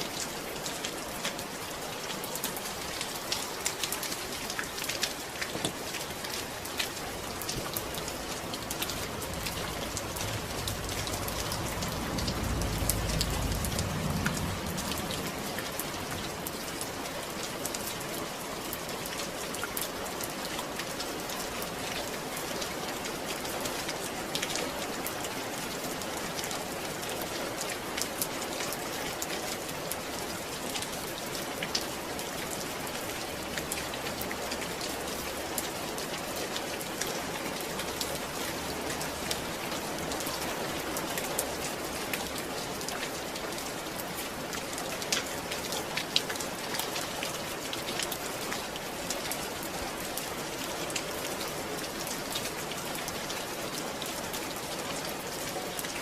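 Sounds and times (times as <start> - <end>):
steady rain: 0.0 - 56.0
low rumble: 9.2 - 16.2.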